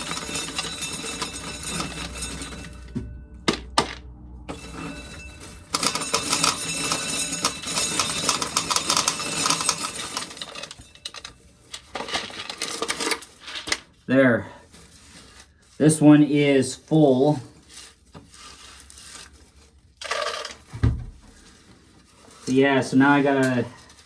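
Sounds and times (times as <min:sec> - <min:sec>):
corn kernels rattling down: 0:00.0 - 0:02.8, 0:04.5 - 0:13.5, 0:20.0 - 0:20.6.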